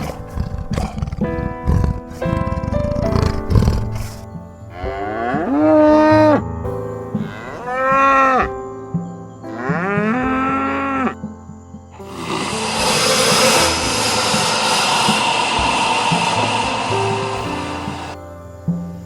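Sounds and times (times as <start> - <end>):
cattle mooing: 12.0 - 18.2.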